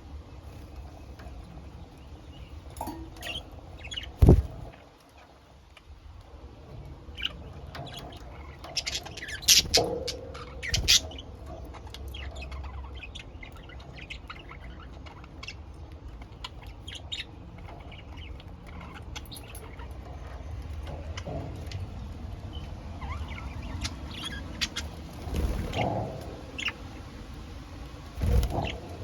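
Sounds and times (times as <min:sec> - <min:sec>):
budgerigars chirping: 0:07.1 - 0:27.4, 0:28.1 - 0:29.0.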